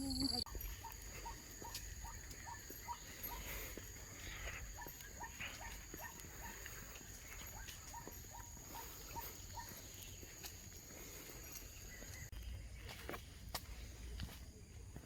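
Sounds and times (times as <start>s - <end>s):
high-pitched insect drone: 0.0s - 6.1s.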